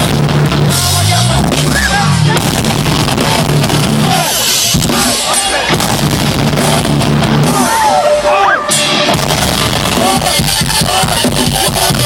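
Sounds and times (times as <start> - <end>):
metalcore band playing loudly: 0.0 - 12.0
pounding drums: 0.0 - 12.0.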